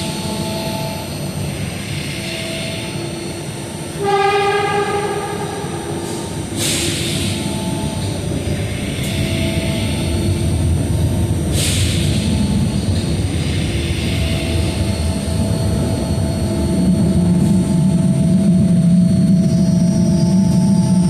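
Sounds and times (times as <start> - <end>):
light-rail train rumbling: 0.0 - 21.0
train horn tone: 3.9 - 6.0.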